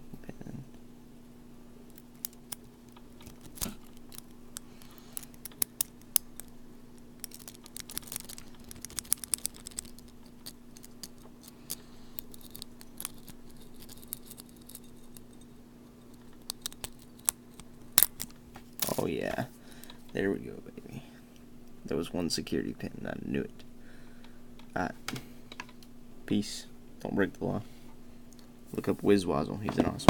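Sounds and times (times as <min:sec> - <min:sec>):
steady low hum: 0:00.0 - 0:30.0
lock picking metallic clicks: 0:16.1 - 0:18.3.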